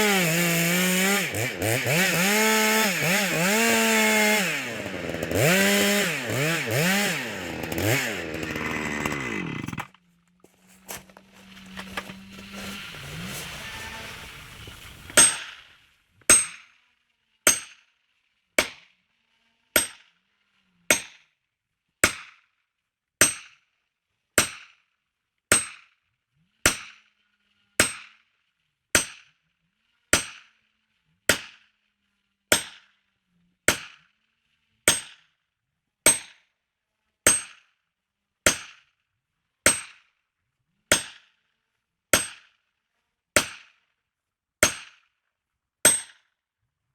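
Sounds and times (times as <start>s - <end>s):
chainsaw engine revving: 0.0s - 16.0s.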